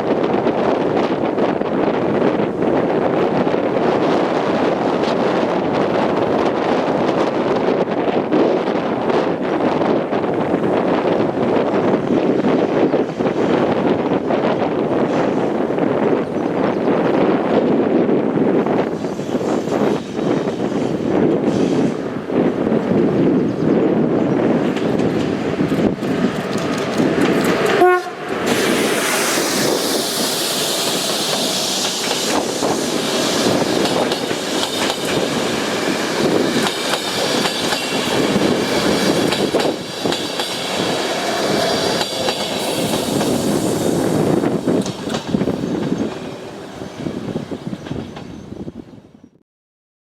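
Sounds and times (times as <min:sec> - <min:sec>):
train wheels clicking over rail joints: 0:24.4 - 0:46.8
locomotive horn note: 0:27.7 - 0:28.4.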